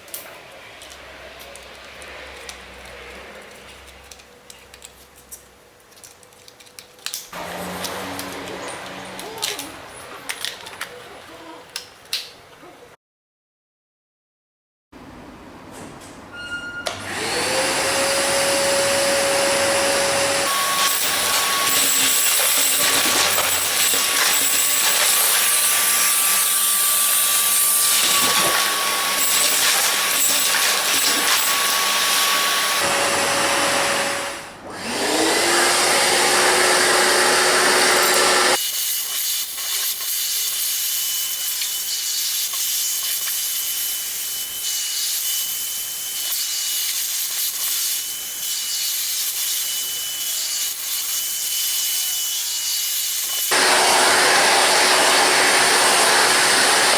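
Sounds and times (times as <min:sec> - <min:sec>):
vacuum cleaner motors whining: 0:07.4 - 0:09.4, 0:16.9 - 0:38.6, 0:49.5 - 0:56.9.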